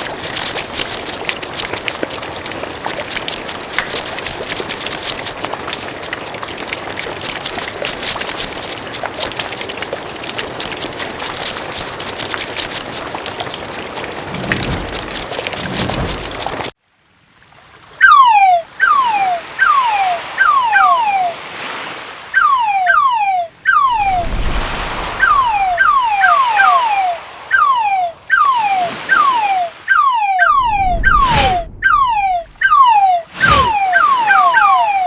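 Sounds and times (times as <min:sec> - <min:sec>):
falling whistle chirps: 0:14.3 - 0:16.4, 0:18.0 - 0:35.0
surf: 0:14.3 - 0:16.7, 0:18.0 - 0:35.0
rain-like hiss: 0:24.2 - 0:25.4.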